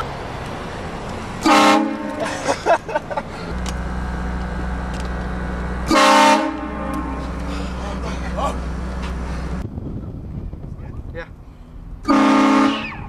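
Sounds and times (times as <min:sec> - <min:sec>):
car engine running: 0:00.0 - 0:10.8
train horn blasting: 0:01.4 - 0:02.2, 0:05.8 - 0:07.5, 0:12.0 - 0:13.0.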